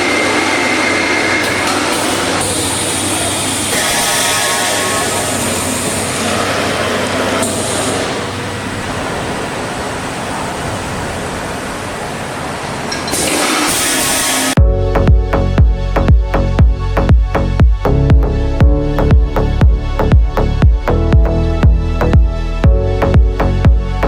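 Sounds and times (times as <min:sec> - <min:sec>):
welding line machine noise: 0:00.0 - 0:10.2, 0:12.9 - 0:14.6
machine hiss: 0:00.0 - 0:10.9, 0:13.1 - 0:14.6.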